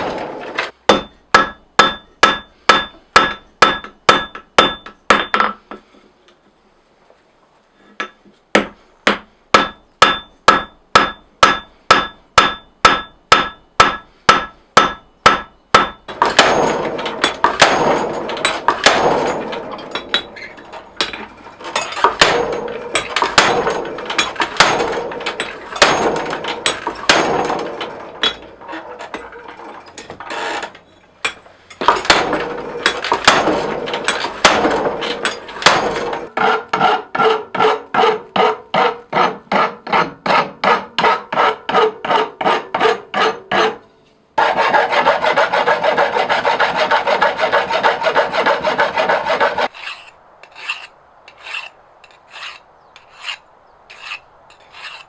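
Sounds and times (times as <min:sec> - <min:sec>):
hammer striking steel on anvil: 0:00.9 - 0:05.7, 0:08.0 - 0:29.4, 0:31.2 - 0:36.3.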